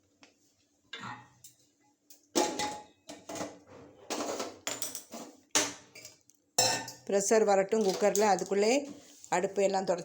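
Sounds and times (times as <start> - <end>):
metal cookware clattering: 2.3 - 8.8.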